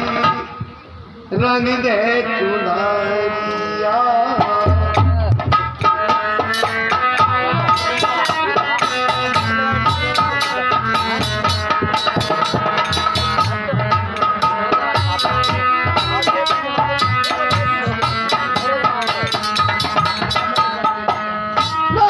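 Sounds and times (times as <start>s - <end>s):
held melody notes: 1.9s - 22.0s
hand drum rhythm: 4.4s - 22.0s.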